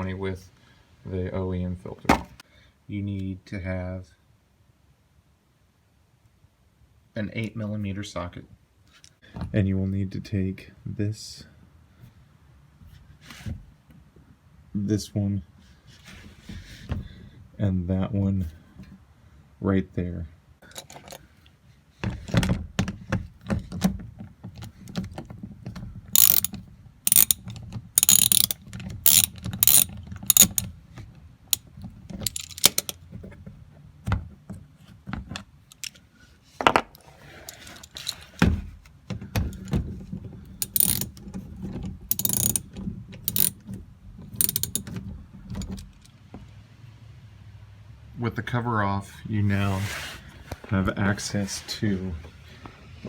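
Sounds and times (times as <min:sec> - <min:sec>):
tool and fasteners clattering: 0:20.6 - 0:21.3, 0:22.1 - 0:33.4, 0:36.6 - 0:46.2
socket ratchet clicking: 0:26.2 - 0:30.7, 0:31.6 - 0:33.0, 0:40.6 - 0:41.2, 0:42.1 - 0:42.6, 0:43.3 - 0:43.6, 0:44.4 - 0:44.9.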